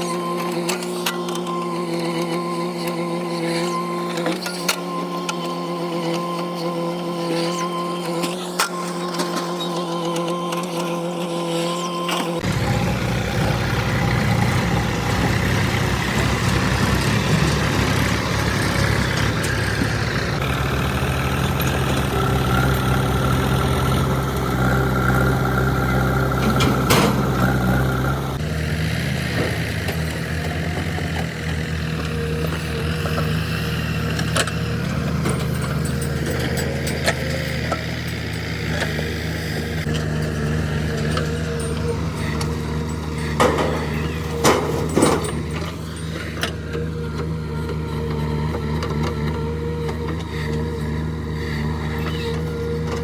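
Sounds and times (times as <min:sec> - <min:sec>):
diesel engine running: 0:12.4 - 0:53.0.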